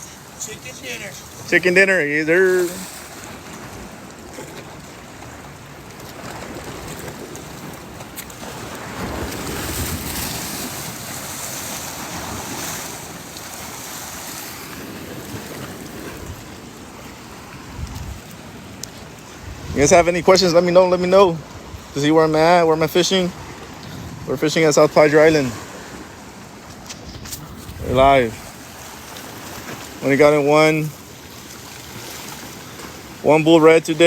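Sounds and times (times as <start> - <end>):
waves washing against jetty: 0.0 - 34.0
wind buffeting microphone: 6.2 - 20.6, 25.5 - 30.0.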